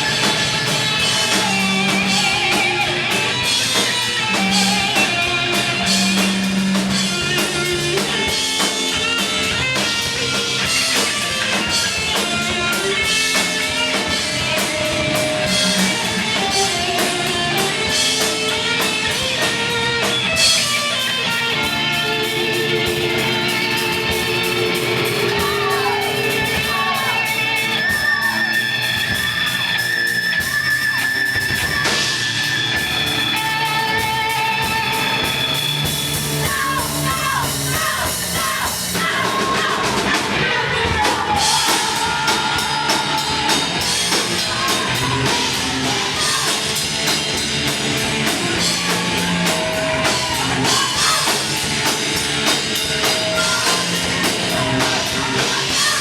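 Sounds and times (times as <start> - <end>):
drum kit: 0.0 - 56.0
electric guitars: 0.0 - 56.0
person singing: 22.1 - 28.7, 36.4 - 46.9, 48.3 - 52.0, 53.0 - 56.0.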